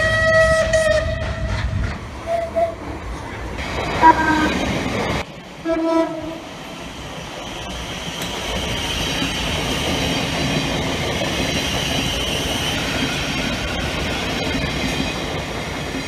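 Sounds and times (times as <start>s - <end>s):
train horn blasts: 0.0s - 1.7s, 4.0s - 4.7s, 5.6s - 6.6s
rumble of moving train: 0.0s - 16.0s.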